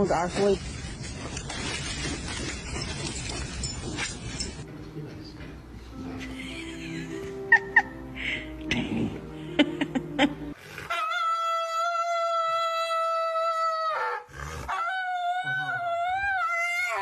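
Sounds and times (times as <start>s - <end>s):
dog howling: 10.8s - 17.0s.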